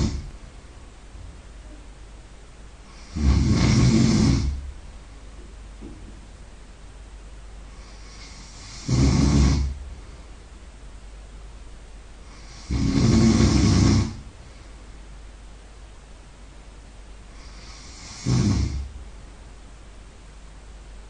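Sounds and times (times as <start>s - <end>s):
person snoring loudly: 0.0s - 0.3s, 2.9s - 4.6s, 7.8s - 9.8s, 12.3s - 14.3s, 17.4s - 18.9s.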